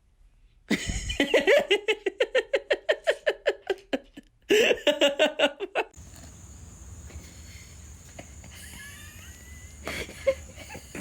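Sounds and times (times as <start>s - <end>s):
person laughing hard: 8.0s - 11.0s.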